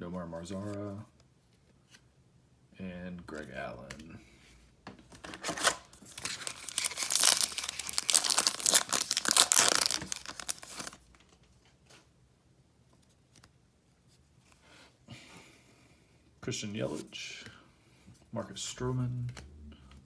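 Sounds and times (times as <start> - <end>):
cards being handled: 5.0 - 12.0, 12.9 - 13.6
plastic wrapper tearing and crinkling: 5.2 - 11.2.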